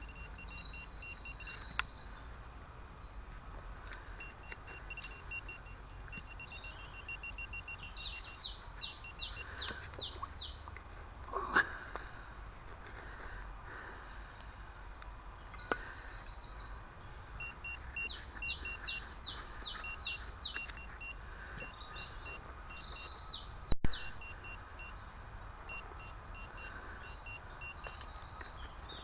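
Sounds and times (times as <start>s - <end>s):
metal detector beeping: 0.0s - 1.8s, 4.2s - 10.0s, 17.4s - 23.2s, 23.8s - 25.0s, 25.7s - 28.1s
bird chirping: 0.0s - 3.3s, 4.0s - 10.8s, 14.7s - 29.0s.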